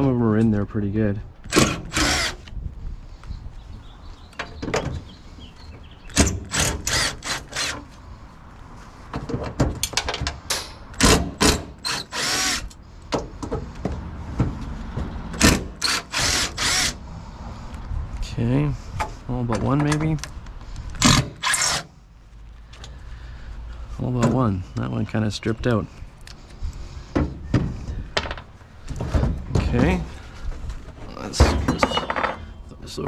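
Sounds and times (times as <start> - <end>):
cordless drill removing screws: 1.5 - 2.5, 6.1 - 7.9, 11.0 - 12.8, 15.4 - 17.0, 20.9 - 21.9.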